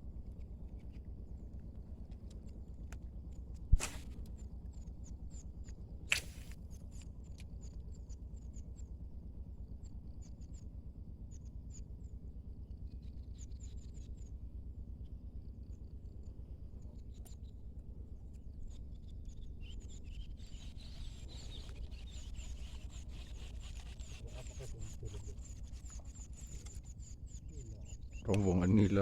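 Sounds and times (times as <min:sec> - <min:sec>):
small birds chirping: 0:00.0 - 0:09.0, 0:09.7 - 0:14.4, 0:15.0 - 0:29.0
low outdoor rumble: 0:00.0 - 0:29.0.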